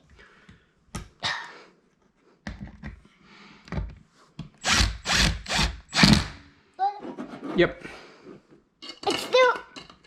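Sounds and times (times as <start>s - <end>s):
cordless drill driving a fastener: 4.6s - 6.4s.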